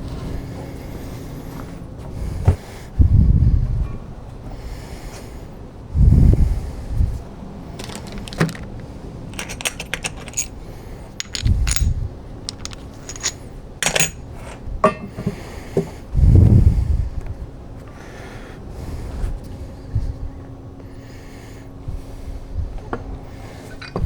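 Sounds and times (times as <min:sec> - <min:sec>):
small metal objects clinking: 0:07.8 - 0:10.6, 0:11.2 - 0:14.6.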